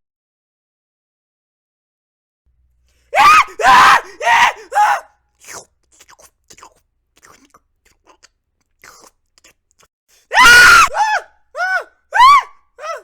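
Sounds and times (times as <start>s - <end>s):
high-pitched scream: 10.3s - 13.0s.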